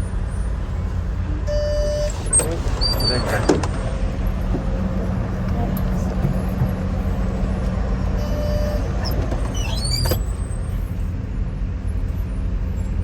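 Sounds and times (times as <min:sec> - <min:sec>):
engine and road rumble: 0:00.0 - 0:13.0
high squeak: 0:08.3 - 0:10.4.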